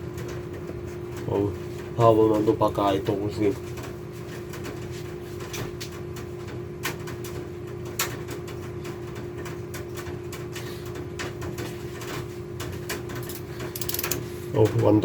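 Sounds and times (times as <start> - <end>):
objects clicking and rustling: 9.4 - 14.8.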